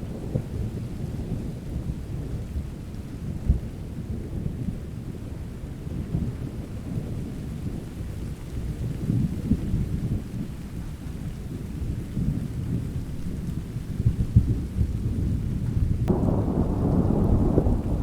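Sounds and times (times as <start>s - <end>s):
steady rain: 0.0s - 18.0s
rolling thunder: 12.2s - 18.0s.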